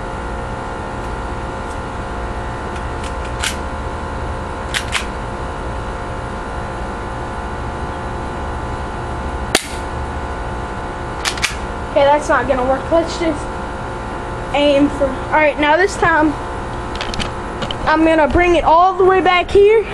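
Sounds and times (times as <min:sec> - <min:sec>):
steady hum: 0:00.0 - 0:19.9
sharp clicks: 0:11.2 - 0:11.6.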